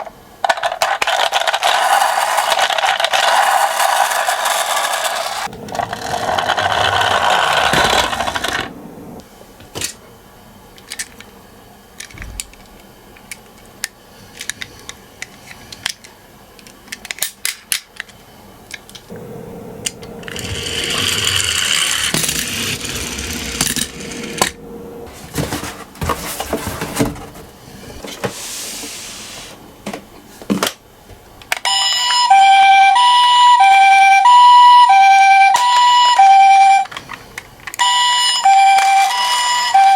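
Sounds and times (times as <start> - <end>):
toy cars rolling and rattling: 0.0 - 8.8, 13.3 - 19.0, 19.8 - 24.6, 35.3 - 39.9
toy two-tone siren: 31.7 - 36.9, 37.8 - 39.9.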